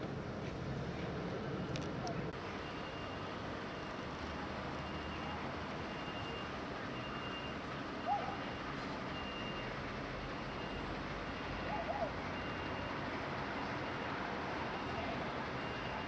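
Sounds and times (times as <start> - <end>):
faint high beep: 2.6 - 3.2.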